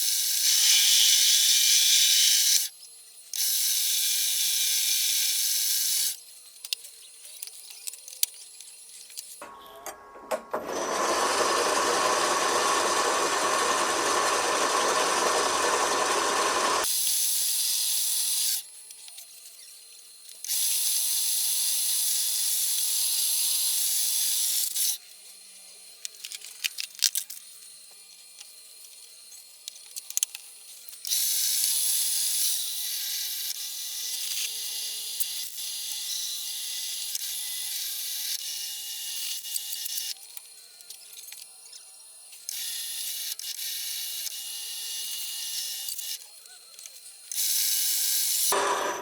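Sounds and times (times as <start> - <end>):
machine tool cutting aluminum: 10.5 - 17.0, 47.3 - 49.0.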